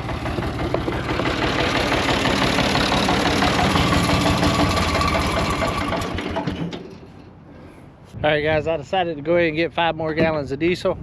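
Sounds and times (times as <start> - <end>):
diesel tractor engine running: 0.0 - 7.3.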